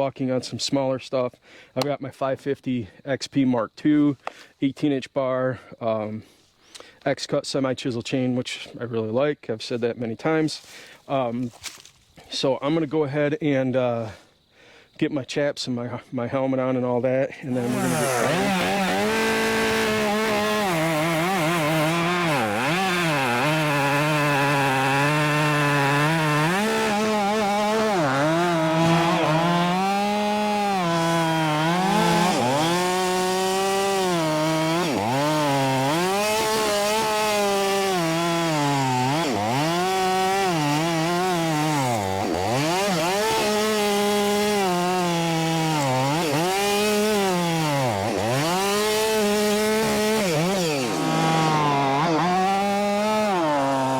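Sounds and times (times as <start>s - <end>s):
chainsaw cutting wood: 17.5s - 53.9s.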